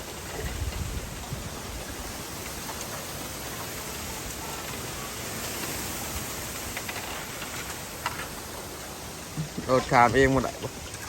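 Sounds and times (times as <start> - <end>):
strong wind blowing: 0.0 - 2.6.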